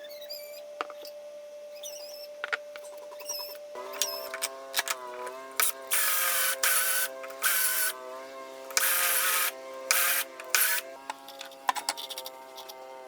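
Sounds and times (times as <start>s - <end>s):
wood lathe whining: 3.8s - 13.0s.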